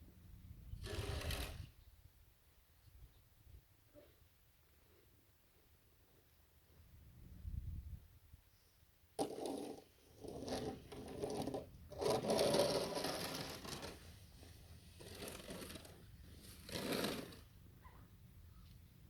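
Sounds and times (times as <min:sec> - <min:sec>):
shovel scraping through snow: 0:09.5 - 0:17.5.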